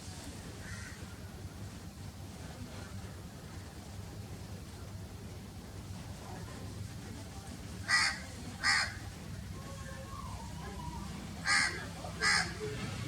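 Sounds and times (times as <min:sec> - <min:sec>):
low background rumble: 0:00.0 - 0:13.0
crow cawing: 0:00.6 - 0:01.0, 0:07.9 - 0:09.0, 0:11.4 - 0:12.6.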